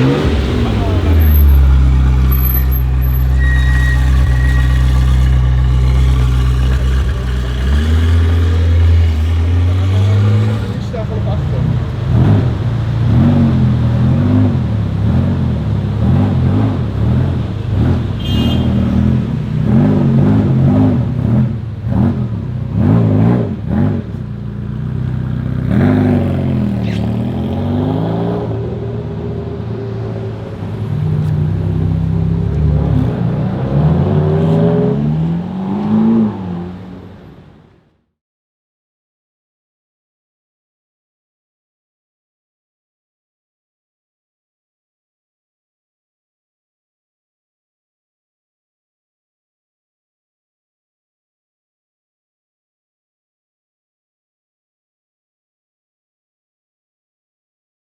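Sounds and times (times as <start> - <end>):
exhaust pops: 0.0 - 11.1
supercar engine revving: 0.0 - 37.7.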